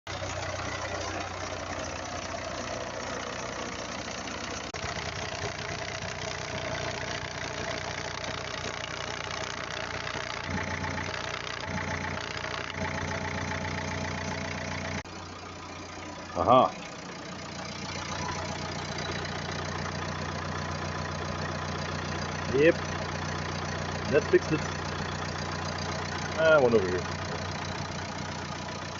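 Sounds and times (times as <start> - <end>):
diesel engine idling: 0.1 - 28.9.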